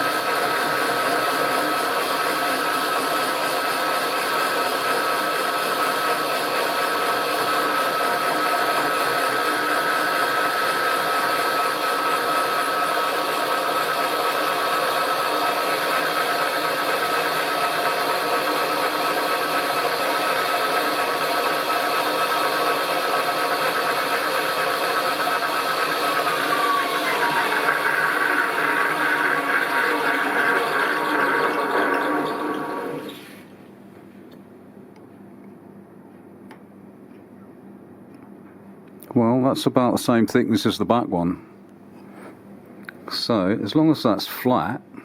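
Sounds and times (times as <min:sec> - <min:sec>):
milling machine cutter whine: 0:00.0 - 0:33.3.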